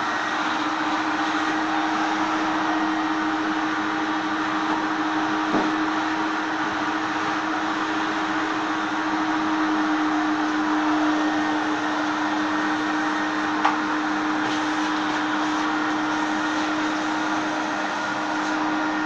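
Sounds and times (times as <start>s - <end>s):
vacuum cleaner motor running: 0.0s - 19.0s.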